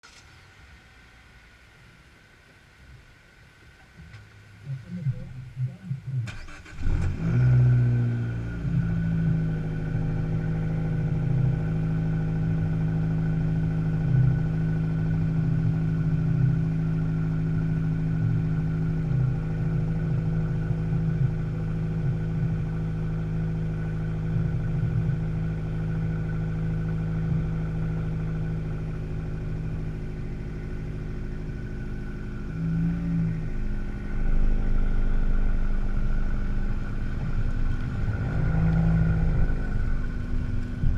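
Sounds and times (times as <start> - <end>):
car engine and road noise: 0.0 - 40.9
faint wheel noise: 0.0 - 40.9.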